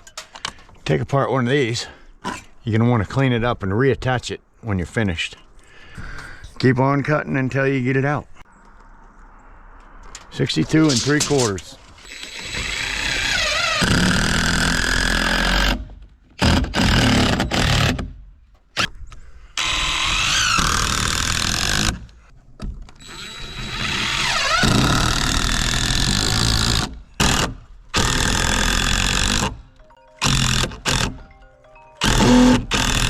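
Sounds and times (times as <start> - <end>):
power saw cutting wood: 12.0 - 15.8, 16.4 - 18.1, 19.6 - 22.1, 23.0 - 29.6, 30.2 - 31.2, 32.0 - 33.0.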